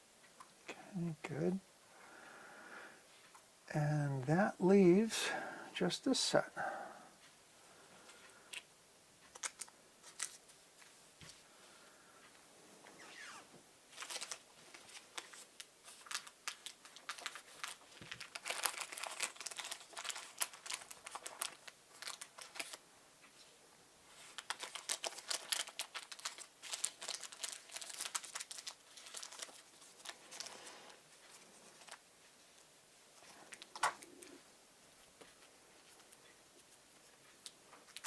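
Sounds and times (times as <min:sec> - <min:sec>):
plastic crinkling with clicks: 0:08.5 - 0:10.9, 0:13.9 - 0:23.4, 0:24.2 - 0:34.3, 0:35.2 - 0:38.0.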